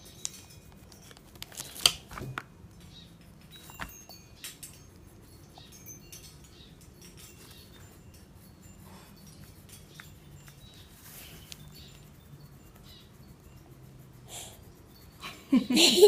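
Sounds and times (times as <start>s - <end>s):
colouring scratching on paper: 0.0s - 2.3s, 7.4s - 15.8s.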